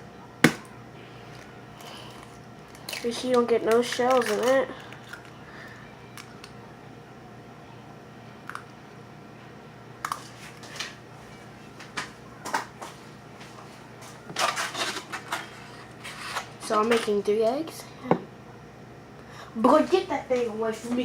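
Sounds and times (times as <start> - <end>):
steady low hum: 0.0 - 21.0
egg shells clicking on a bowl: 2.8 - 5.3.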